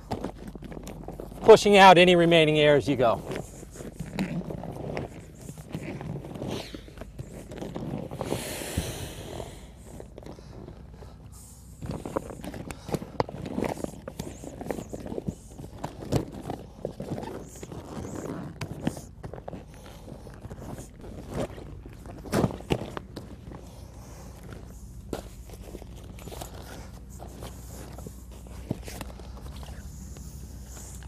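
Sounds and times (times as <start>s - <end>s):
kayak skin crinkling and knocking: 0.0s - 2.4s, 11.8s - 31.0s.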